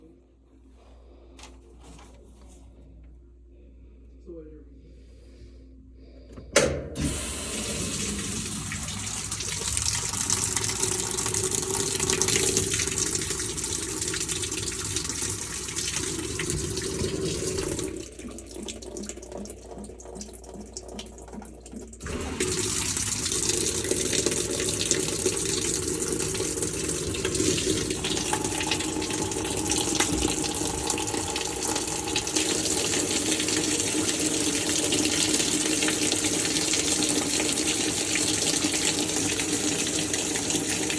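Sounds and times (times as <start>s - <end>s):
water rushing into washer tub: 6.9s - 40.9s.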